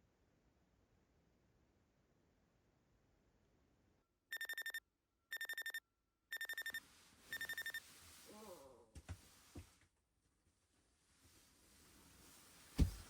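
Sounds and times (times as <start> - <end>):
electronic alarm beeping: 4.3 - 7.8
rustling: 11.2 - 13.0
soft thumps: 12.7 - 13.0.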